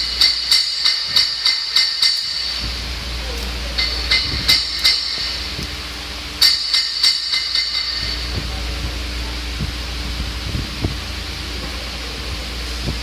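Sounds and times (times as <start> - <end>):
hammer tapping on metal: 0.0 - 2.6, 3.8 - 5.7, 6.4 - 8.2.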